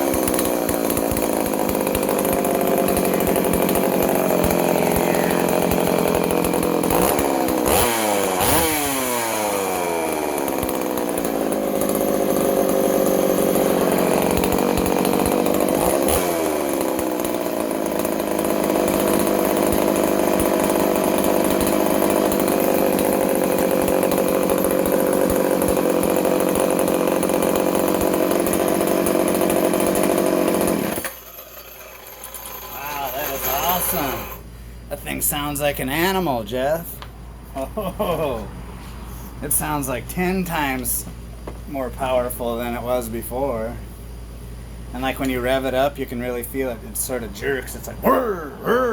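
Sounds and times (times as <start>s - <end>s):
chainsaw engine revving: 0.0s - 36.3s.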